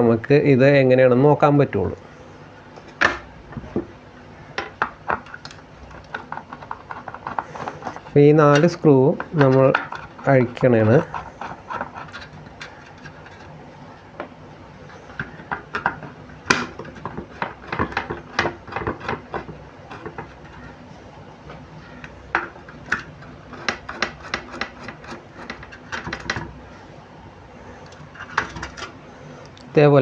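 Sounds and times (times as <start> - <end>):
screwdriver clicking and scraping: 5.2 - 13.5, 22.7 - 26.4.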